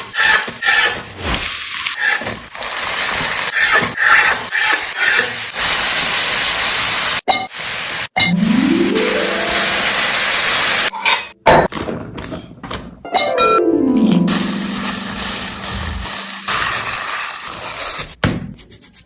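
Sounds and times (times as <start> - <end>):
chicken sizzling in a pan: 0.2 - 8.1, 14.3 - 18.2.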